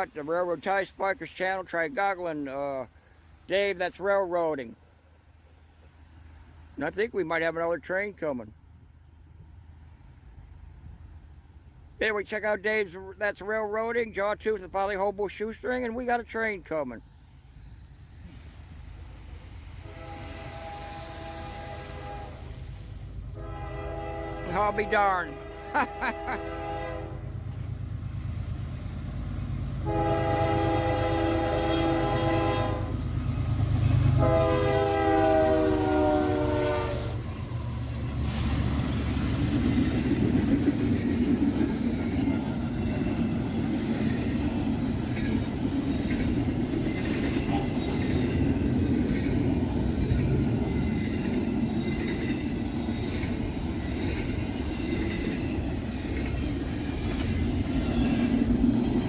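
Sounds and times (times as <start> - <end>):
freight cars rumbling on rails: 18.2 - 59.0
locomotive air horn blasts: 19.8 - 22.6, 23.3 - 27.4, 29.8 - 33.0, 34.2 - 37.2.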